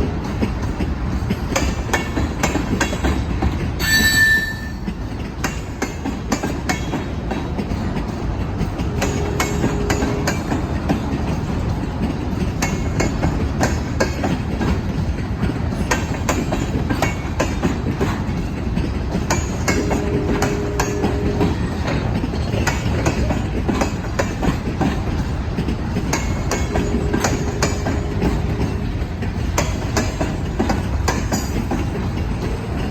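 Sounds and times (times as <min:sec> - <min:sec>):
wheels clicking over rail joints: 0:00.0 - 0:32.9
wheel squeal tone: 0:03.8 - 0:05.0.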